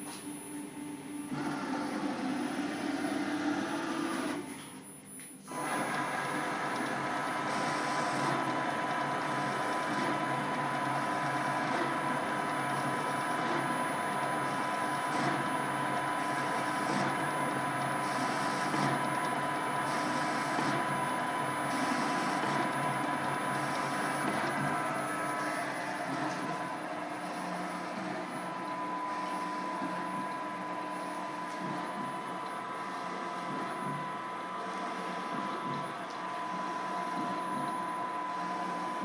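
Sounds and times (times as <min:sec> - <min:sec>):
lathe whirring with high whine: 0:00.0 - 0:39.0.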